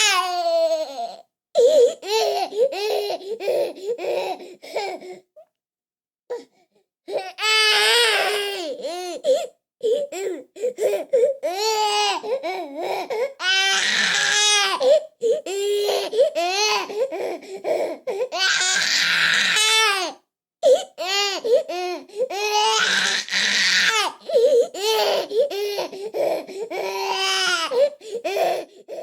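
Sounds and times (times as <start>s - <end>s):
infant crying: 0.0s - 5.2s, 7.1s - 29.0s.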